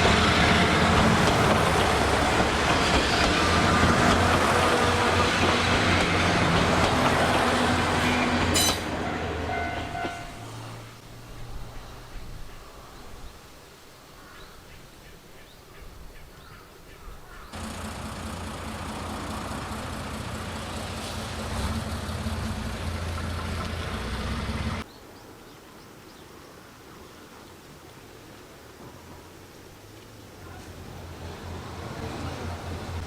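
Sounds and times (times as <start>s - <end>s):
railcar diesel engine running: 0.0s - 11.0s, 17.6s - 24.8s, 30.5s - 33.0s.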